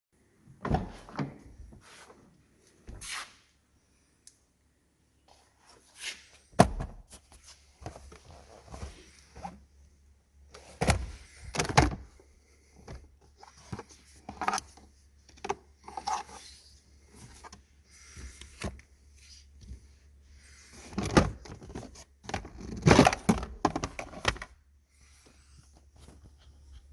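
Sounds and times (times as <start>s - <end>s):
car parts thunking and rattling: 6.6s - 7.0s, 10.7s - 12.2s, 21.0s - 24.5s.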